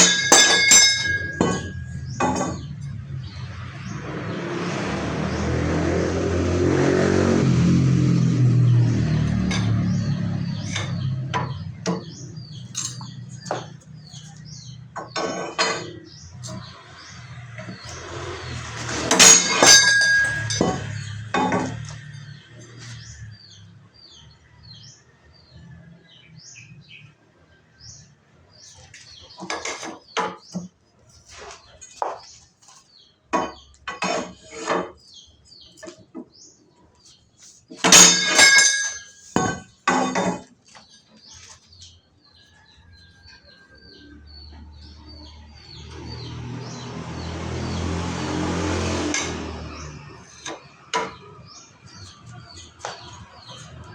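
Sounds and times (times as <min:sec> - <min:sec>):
metal clanking and knocking: 0:00.0 - 0:03.0, 0:09.3 - 0:22.8, 0:29.3 - 0:30.8, 0:37.7 - 0:40.6.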